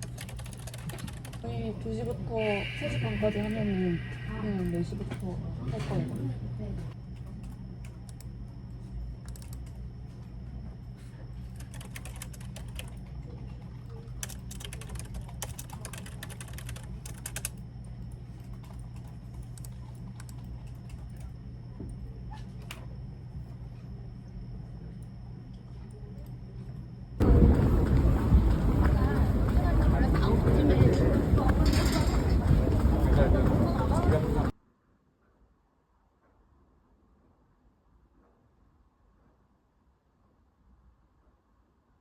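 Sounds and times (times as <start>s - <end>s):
low hum: 0.0s - 15.8s, 16.7s - 34.5s.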